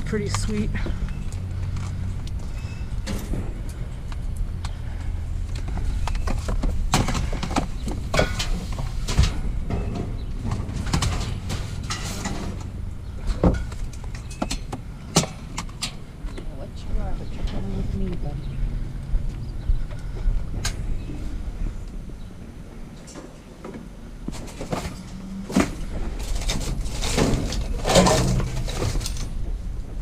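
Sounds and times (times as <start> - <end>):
low rumble: 0.0 - 15.1, 16.0 - 23.0
junk knocking and clattering: 0.0 - 18.0, 23.0 - 30.0.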